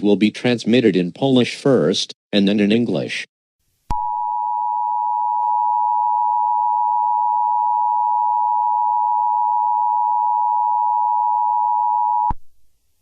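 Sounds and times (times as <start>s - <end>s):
two-tone alarm: 4.0s - 12.4s.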